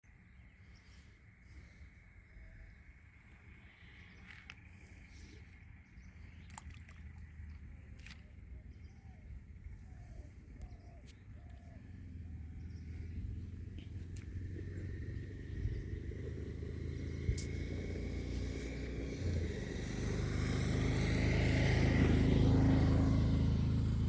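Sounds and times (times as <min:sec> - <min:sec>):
low rumble: 0:08.9 - 0:20.2.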